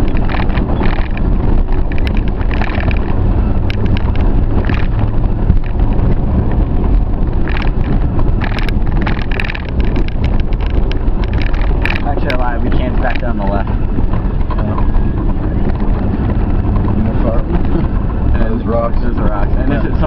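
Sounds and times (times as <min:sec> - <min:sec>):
knocks and rattles from rocks: 0:00.0 - 0:06.2, 0:07.4 - 0:14.8
engine rumbling under load: 0:00.0 - 0:20.0.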